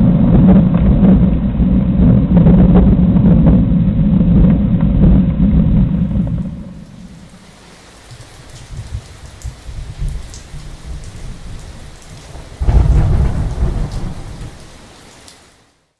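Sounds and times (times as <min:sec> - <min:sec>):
loud thunderclap: 0:00.0 - 0:07.4, 0:08.5 - 0:14.9
thunder rumbling: 0:00.0 - 0:15.2
rain falling: 0:00.0 - 0:15.9.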